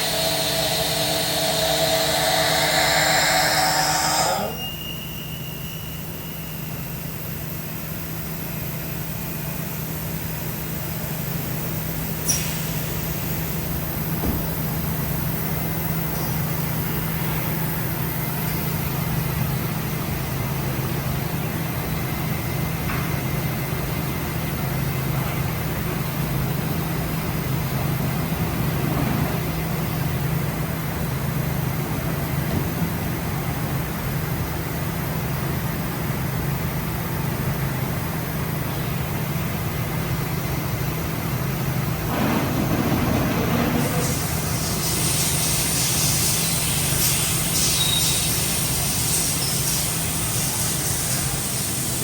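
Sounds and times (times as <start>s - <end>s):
machine low hum: 0.0s - 7.7s.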